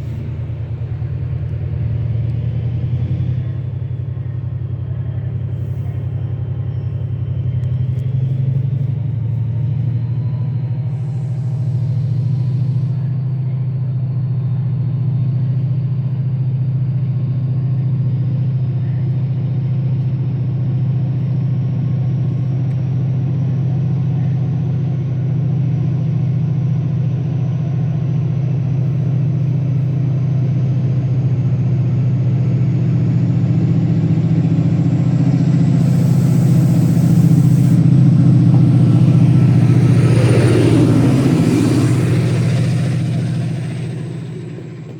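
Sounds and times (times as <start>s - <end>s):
train running rumble: 0.0s - 44.9s.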